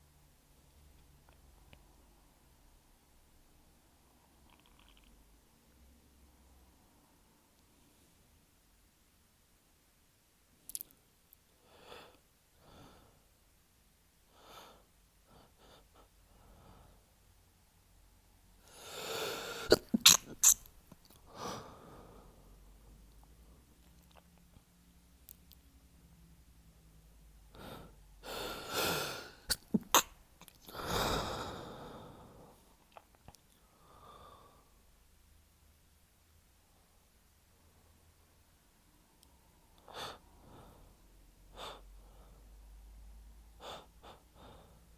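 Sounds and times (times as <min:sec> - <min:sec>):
heavy gasping breaths: 0:18.6 - 0:20.6, 0:27.5 - 0:30.0, 0:30.6 - 0:32.6, 0:43.6 - 0:44.9
short sniffs: 0:18.7 - 0:20.7, 0:28.2 - 0:30.1
man's stifled sneezes: 0:19.4 - 0:20.6, 0:28.8 - 0:30.2.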